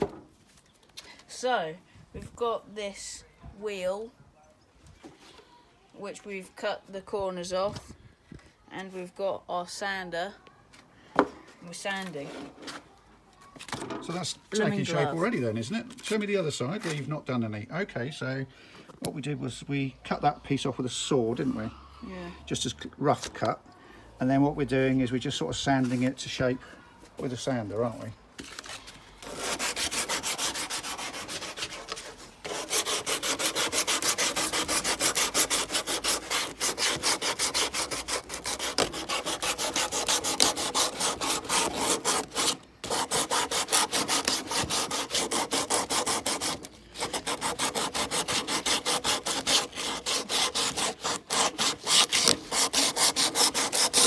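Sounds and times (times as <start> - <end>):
sanding wood: 29.2 - 54.0.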